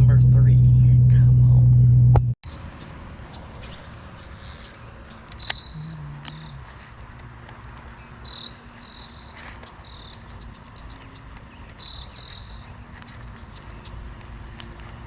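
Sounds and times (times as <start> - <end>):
low rumble: 0.0 - 2.4.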